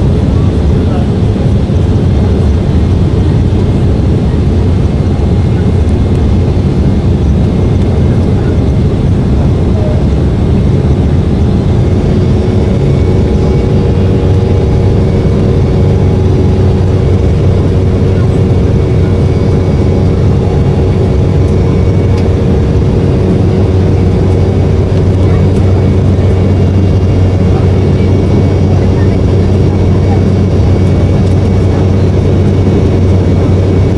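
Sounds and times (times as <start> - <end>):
airliner engine drone: 0.0 - 33.9.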